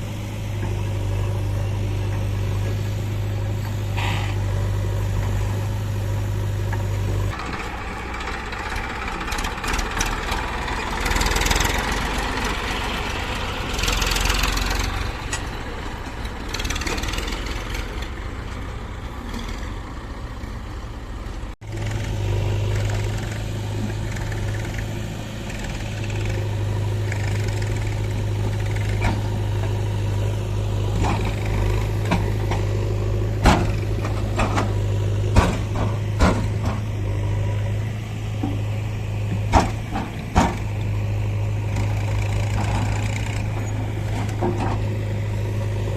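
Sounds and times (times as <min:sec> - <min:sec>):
diesel engines running: 0:00.0 - 0:45.9.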